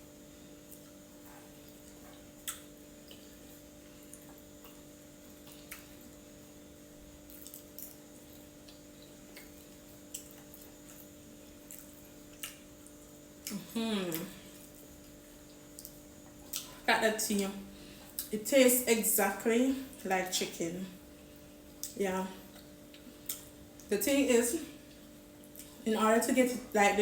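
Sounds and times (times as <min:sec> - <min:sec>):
steady low hum: 0:00.0 - 0:27.0
chewing mouth sounds: 0:00.7 - 0:06.4, 0:07.2 - 0:16.9.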